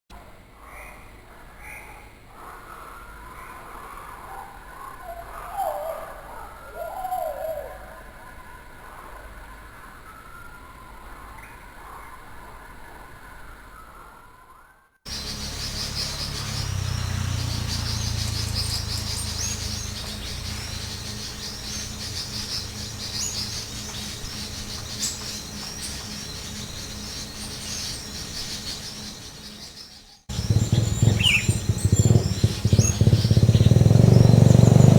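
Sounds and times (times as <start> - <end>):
whistled bird calls: 15.1 - 34.9.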